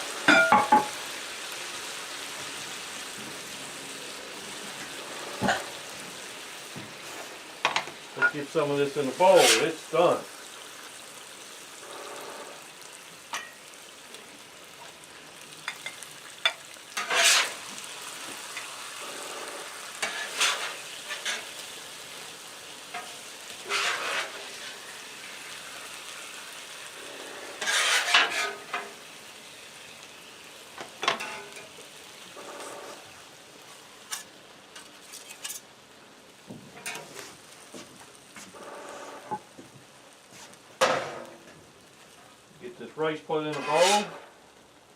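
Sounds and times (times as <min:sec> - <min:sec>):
chicken sizzling on a griddle: 0:00.0 - 0:44.9
metal spatula scraping griddle: 0:04.5 - 0:05.9, 0:06.8 - 0:10.2, 0:16.9 - 0:21.7, 0:22.9 - 0:29.0, 0:31.0 - 0:33.1, 0:33.7 - 0:35.8, 0:36.8 - 0:37.4, 0:38.5 - 0:39.5, 0:43.2 - 0:44.4.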